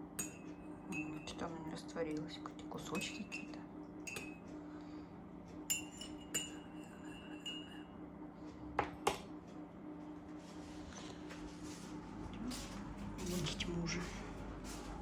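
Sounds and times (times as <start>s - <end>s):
low steady hum: 0.0s - 15.0s
teaspoon clinking against cup: 3.0s - 4.4s, 5.7s - 7.9s.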